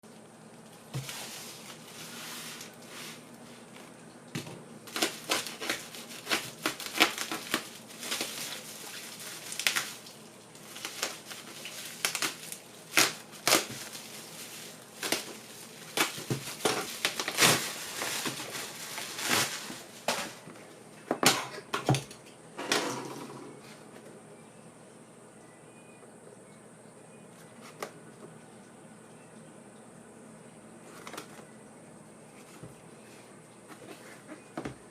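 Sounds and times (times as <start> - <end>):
packaging crinkling and rustling: 0.6 - 4.0, 4.9 - 21.3, 30.9 - 31.5.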